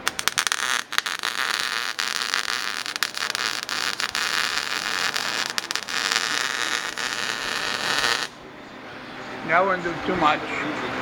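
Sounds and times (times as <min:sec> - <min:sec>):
welding arc crackling: 0:00.0 - 0:08.4.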